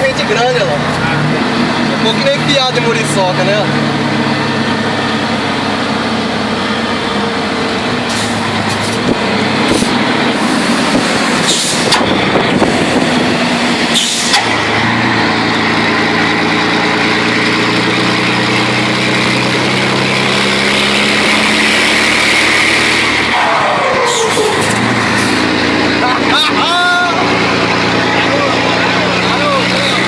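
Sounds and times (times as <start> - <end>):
truck diesel engine running: 0.0 - 30.0
sharp exhaust pops: 8.0 - 26.8.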